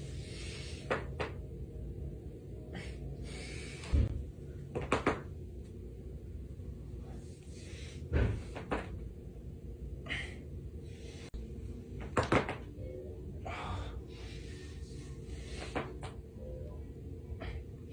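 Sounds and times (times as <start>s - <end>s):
steady low hum: 0.0s - 17.9s.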